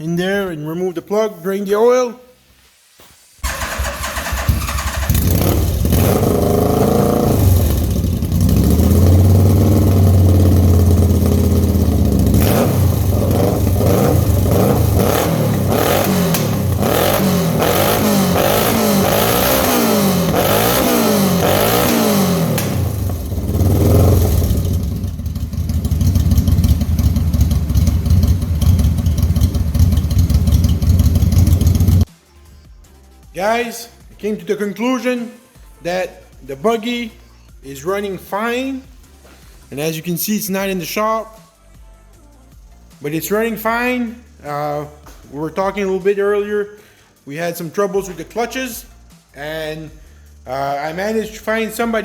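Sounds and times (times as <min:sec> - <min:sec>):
engine running and revving: 0:03.8 - 0:32.1.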